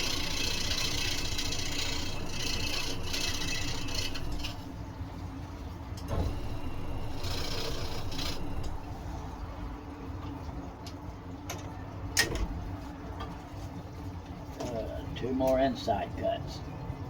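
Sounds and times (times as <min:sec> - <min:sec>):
scroll saw cutting wood: 0:00.0 - 0:04.6, 0:06.1 - 0:08.9.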